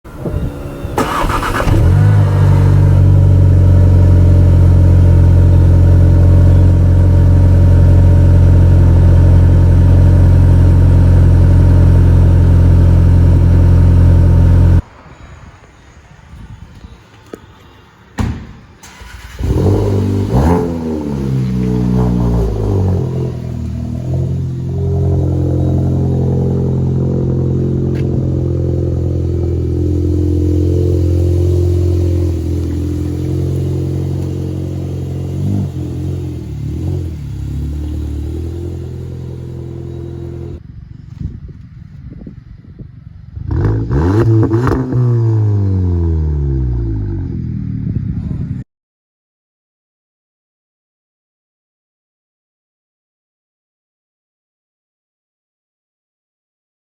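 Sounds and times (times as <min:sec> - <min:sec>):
car engine starting and idling: 0:00.1 - 0:14.8, 0:18.8 - 0:40.6.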